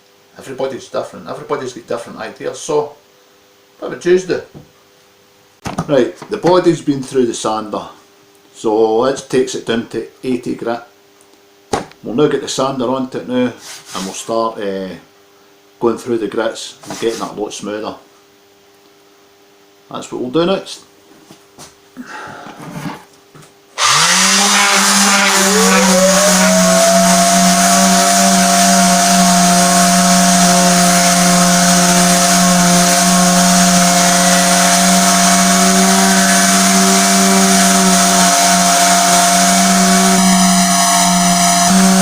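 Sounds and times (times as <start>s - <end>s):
electric sander running: 23.8s - 42.0s.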